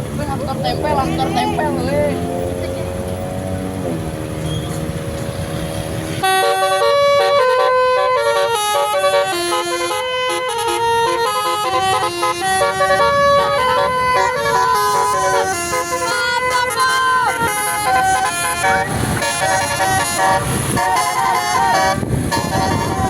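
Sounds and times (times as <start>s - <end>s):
bus engine running: 0.0s - 23.0s
multi-tone bus horn melody: 5.7s - 23.0s.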